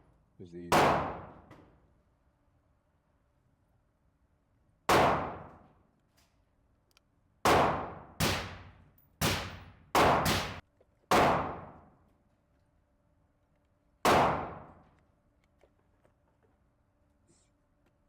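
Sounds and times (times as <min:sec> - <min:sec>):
handgun shots: 0:00.7 - 0:01.5, 0:04.9 - 0:05.6, 0:07.5 - 0:11.9, 0:14.0 - 0:14.8.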